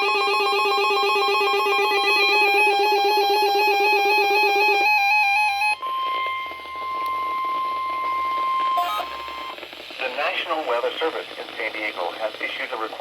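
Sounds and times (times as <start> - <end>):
electronic trilling tone: 0.0 - 9.7
high beep-like tone: 5.8 - 9.6
radio hiss: 5.8 - 13.0.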